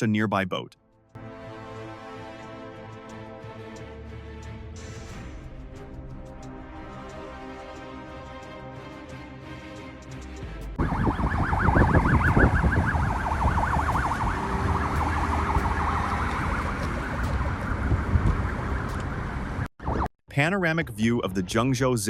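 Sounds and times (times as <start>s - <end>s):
music: 0.8s - 10.8s, 20.4s - 22.0s
wavering siren: 10.8s - 20.1s.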